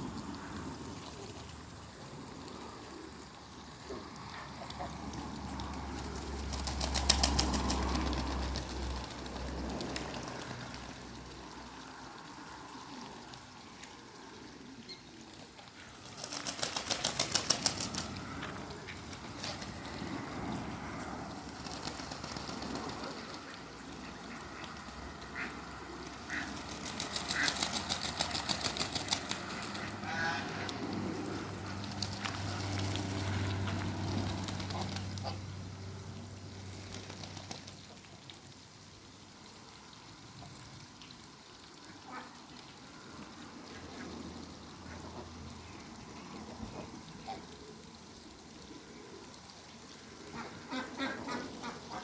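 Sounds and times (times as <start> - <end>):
ducks calling: 22.6 - 33.8, 50.3 - 52.0
duck rattling burst: 26.2 - 30.4.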